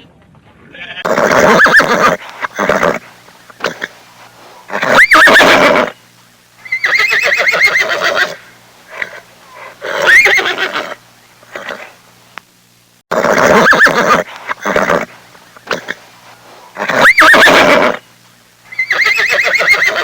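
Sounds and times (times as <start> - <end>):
horse whinnying: 0.8 - 4.0, 4.7 - 6.0, 6.6 - 11.9, 13.1 - 16.0, 16.8 - 18.0, 18.7 - 20.0.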